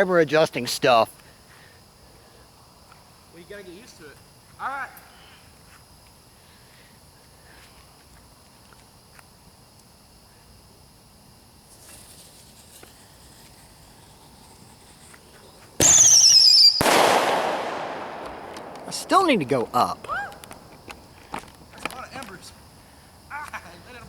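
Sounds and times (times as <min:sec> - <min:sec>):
firework burst with hissing: 0:11.7 - 0:21.2
firework whistle: 0:13.5 - 0:20.7.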